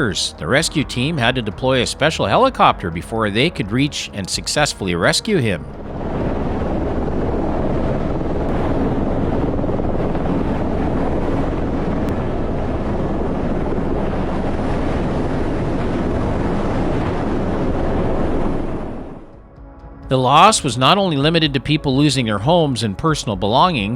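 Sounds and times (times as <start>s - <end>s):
wind buffeting microphone: 4.6s - 19.4s.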